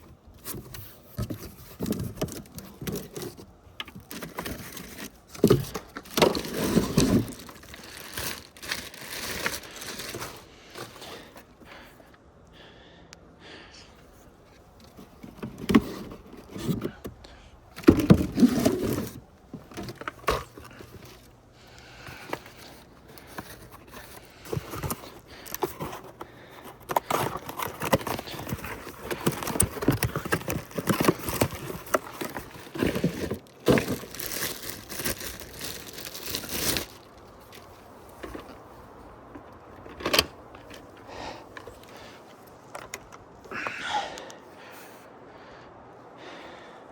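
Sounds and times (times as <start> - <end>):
packaging rustling: 0.0 - 11.6, 14.5 - 43.6
plastic and metal parts clicking: 22.0 - 36.9, 39.2 - 43.3.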